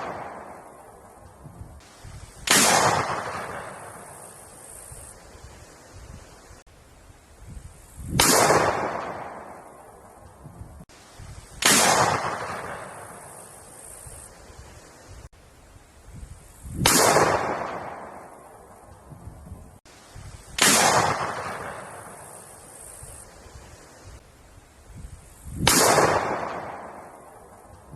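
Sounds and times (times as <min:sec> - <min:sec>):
gunshots with echo: 0:00.0 - 0:00.7, 0:02.5 - 0:04.2, 0:08.2 - 0:09.7, 0:11.6 - 0:13.2, 0:16.8 - 0:18.3, 0:20.6 - 0:22.2, 0:25.6 - 0:27.3.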